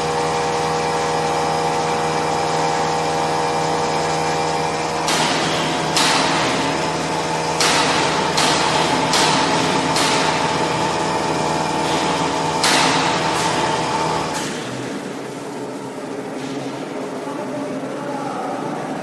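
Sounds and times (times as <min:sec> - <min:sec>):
machine whine: 0:00.0 - 0:19.0.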